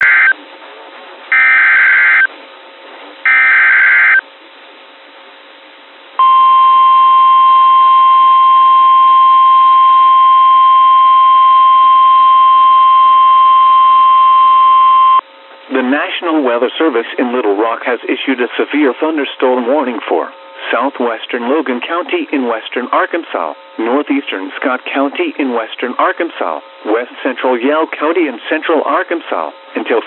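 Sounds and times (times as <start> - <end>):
steady warning alarm tone: 0.0 - 0.4, 1.3 - 2.3, 3.3 - 4.2, 6.2 - 15.2.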